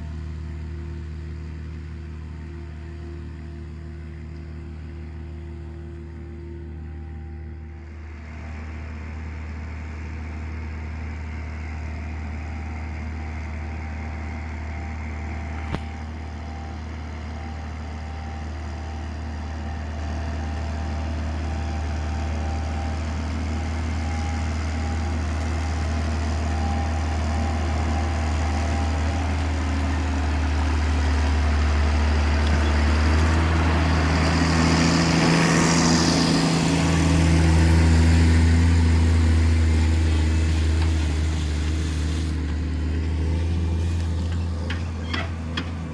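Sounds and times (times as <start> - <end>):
tractor diesel engine running: 0.0 - 45.9
hiss: 39.8 - 42.7.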